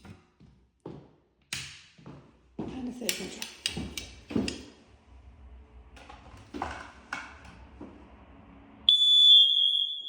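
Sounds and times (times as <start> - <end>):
smoke alarm test beep: 8.9 - 10.0.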